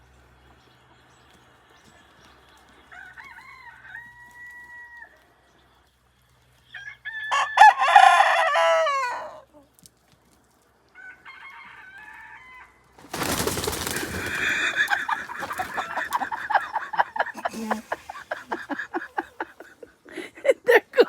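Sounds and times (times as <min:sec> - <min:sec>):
rooster crowing: 0:02.9 - 0:05.2, 0:06.8 - 0:09.4, 0:11.0 - 0:12.8, 0:14.0 - 0:19.8.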